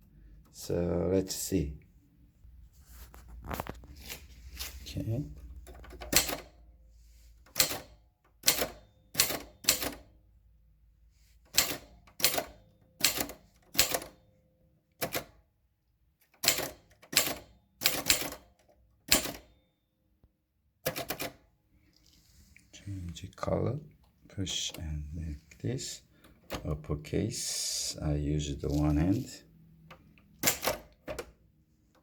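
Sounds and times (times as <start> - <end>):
typewriter keystrokes clacking: 5.6 - 6.6, 7.5 - 10.1, 11.5 - 14.2, 15.0 - 15.4, 16.3 - 19.5, 20.8 - 21.4, 29.9 - 31.4.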